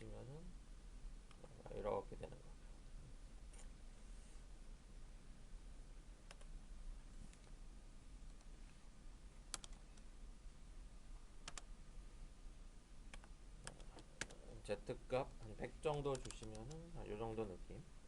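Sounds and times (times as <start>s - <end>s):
faint low hum: 0.0s - 18.0s
computer mouse clicks: 6.3s - 6.5s, 9.5s - 10.1s, 11.4s - 11.7s, 13.1s - 14.4s, 15.9s - 16.8s.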